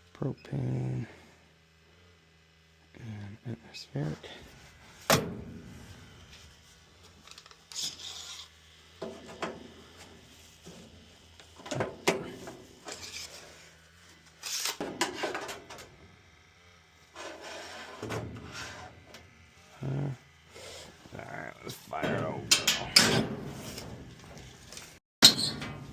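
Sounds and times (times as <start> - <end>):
faint low hum: 0.0 - 14.7
handling scrapes and knocks: 17.2 - 19.0.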